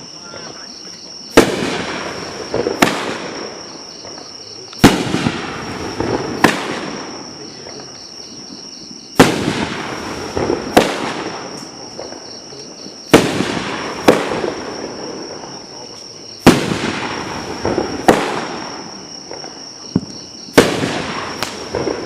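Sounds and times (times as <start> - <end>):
firework crackling: 0.0 - 22.0
firework shot thumps: 1.3 - 7.9, 9.1 - 12.3, 13.1 - 14.8, 16.4 - 22.0.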